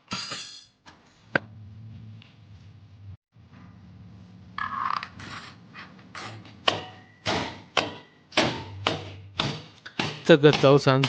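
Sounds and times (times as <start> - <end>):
hammer knocking on metal: 6.6 - 11.0.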